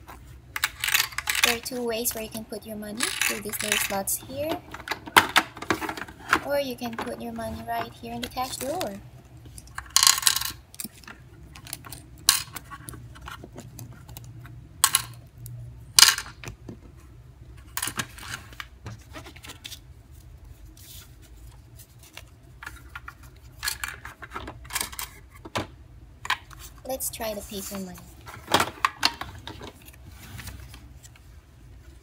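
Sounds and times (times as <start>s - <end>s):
toy cash register and coins clicking: 0.6s - 9.0s, 9.7s - 10.8s.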